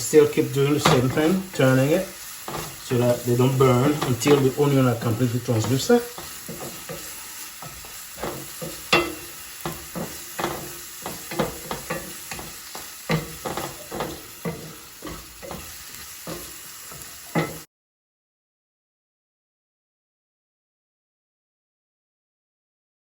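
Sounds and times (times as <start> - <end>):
onion and garlic sizzling in oil: 0.0 - 17.7
utensil scraping against pan: 0.4 - 17.7.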